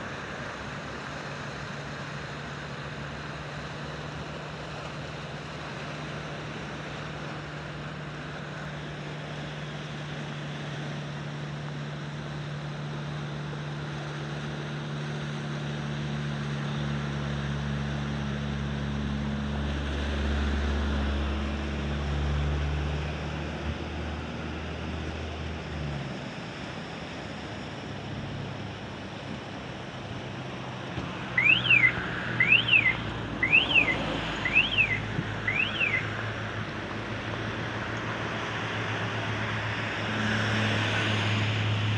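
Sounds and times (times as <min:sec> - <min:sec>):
high whistled chirps: 0:31.4 - 0:36.1.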